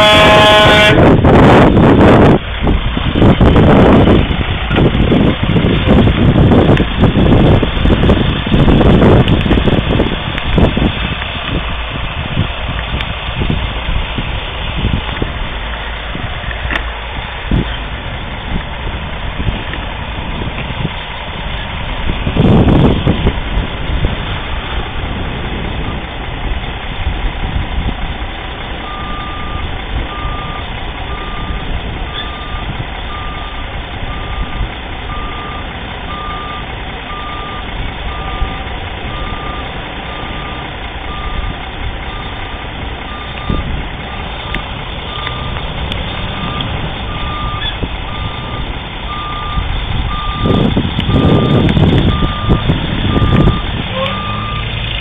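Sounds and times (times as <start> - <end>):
vehicle backup alarm beeping: 0.0 - 2.3, 28.8 - 45.6, 46.2 - 54.7
low rumble: 0.0 - 55.0
road noise: 0.0 - 55.0.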